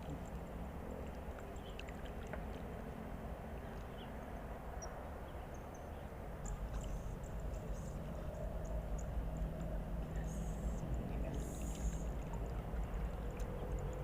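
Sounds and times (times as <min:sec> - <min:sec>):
low rumble and hiss: 0:00.0 - 0:14.0.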